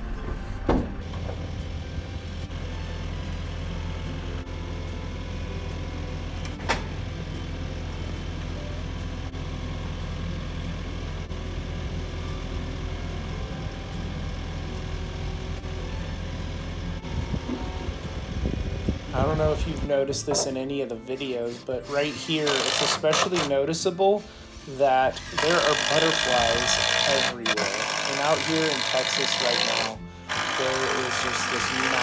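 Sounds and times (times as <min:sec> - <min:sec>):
engine idling: 0:01.0 - 0:20.0.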